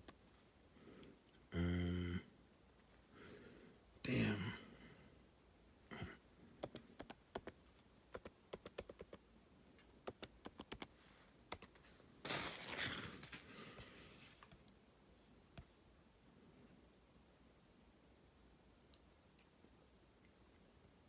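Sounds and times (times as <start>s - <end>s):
rustling noise: 10.9s - 15.8s.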